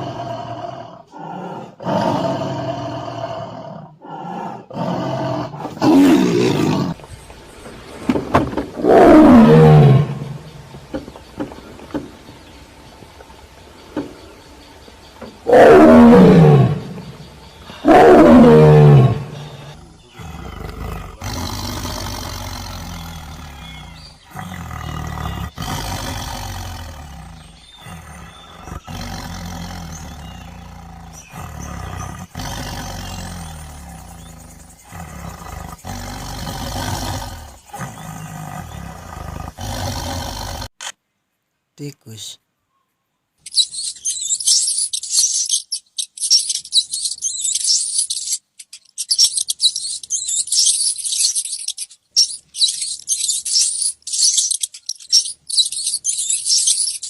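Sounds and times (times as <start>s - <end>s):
tiger roaring: 0.0s - 7.0s, 8.5s - 12.2s, 14.7s - 40.8s
tiger growling: 0.0s - 40.9s, 46.2s - 57.0s.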